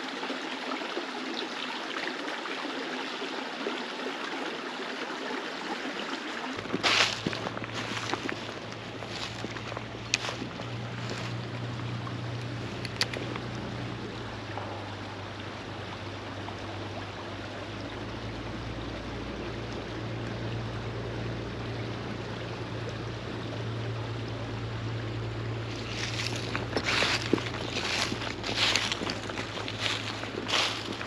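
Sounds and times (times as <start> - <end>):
creek water running over rocks: 0.0 - 31.0
steady low hum: 6.6 - 31.0.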